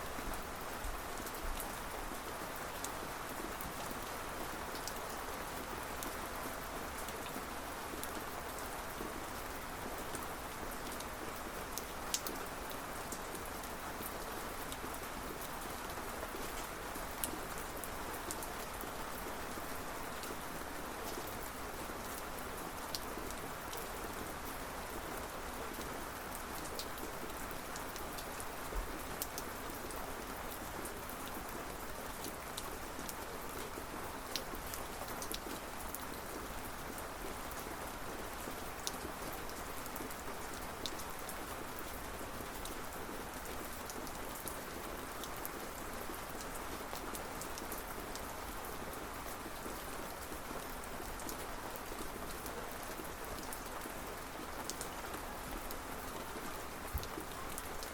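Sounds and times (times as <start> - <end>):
steady rain hiss: 0.0 - 57.9
raindrops ticking on a surface: 0.2 - 15.5, 21.0 - 57.9.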